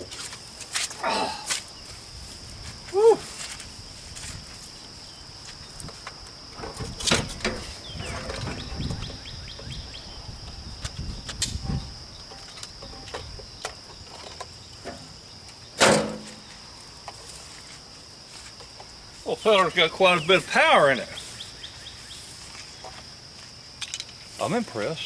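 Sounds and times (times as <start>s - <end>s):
crickets chirping: 0.0s - 25.0s
loud thump: 15.8s - 16.4s.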